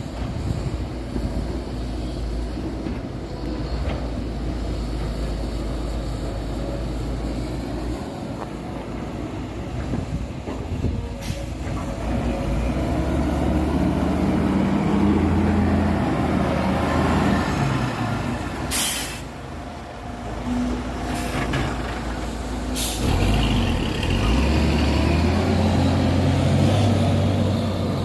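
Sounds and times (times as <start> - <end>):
sharp air hiss: 10.8 - 12.0, 18.5 - 19.6, 22.2 - 23.8
diesel truck engine revving: 11.6 - 19.4, 20.0 - 28.0.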